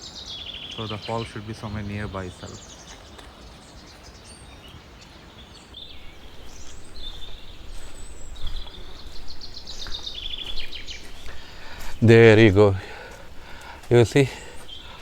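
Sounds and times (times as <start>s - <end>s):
birds whistling and trilling: 0.0s - 15.0s
low rushing background noise: 5.8s - 15.0s.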